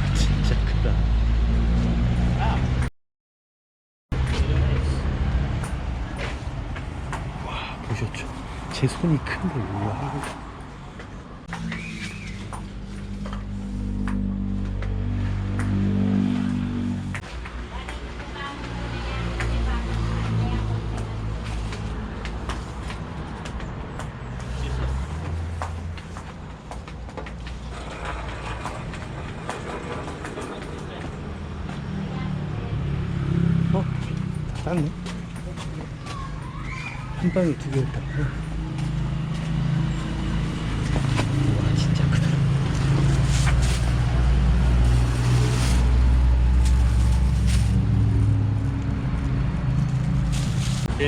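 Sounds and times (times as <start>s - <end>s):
vehicle engine humming: 4.1s - 51.0s
knocks and clatter: 21.7s - 31.5s
vehicle engine running: 37.7s - 51.0s.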